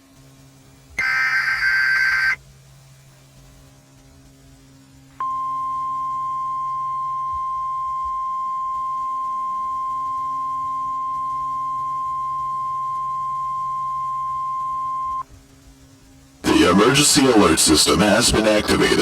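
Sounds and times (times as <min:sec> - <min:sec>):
warbling data-modem screech: 0:01.0 - 0:02.4, 0:08.8 - 0:15.2.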